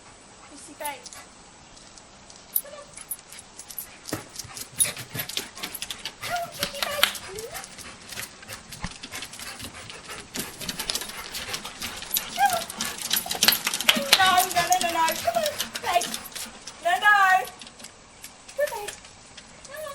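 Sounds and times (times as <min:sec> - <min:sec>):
clicks and scuffles: 0:00.8 - 0:16.8
dog whining and yelping: 0:02.6 - 0:17.1.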